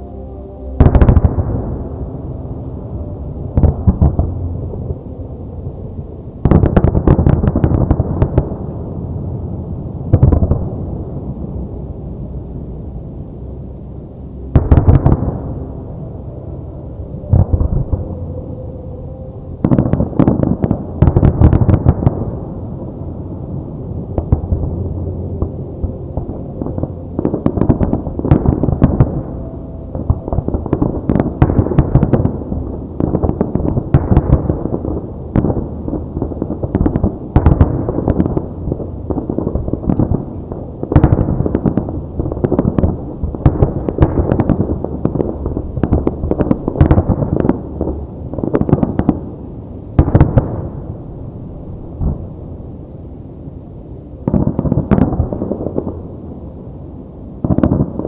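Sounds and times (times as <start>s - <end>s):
continuous low rumble: 0.0s - 58.0s
fireworks booming and banging: 6.3s - 9.0s, 9.6s - 11.3s, 14.5s - 15.6s, 19.6s - 22.4s, 24.0s - 52.6s, 54.2s - 56.2s, 57.4s - 58.0s.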